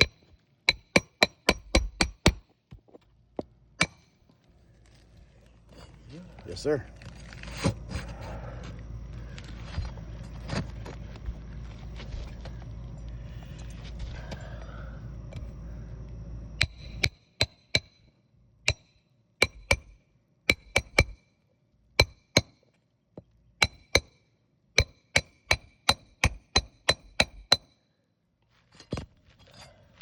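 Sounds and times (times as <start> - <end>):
hammer striking metal nails: 0.0 - 2.5, 3.8 - 4.1, 16.6 - 18.0, 18.7 - 21.2, 22.0 - 22.6, 23.6 - 24.2, 24.8 - 27.8.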